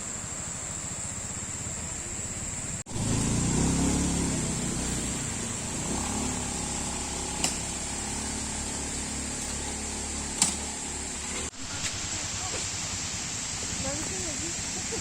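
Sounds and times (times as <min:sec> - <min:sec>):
vehicle engine droning: 0:00.0 - 0:14.9.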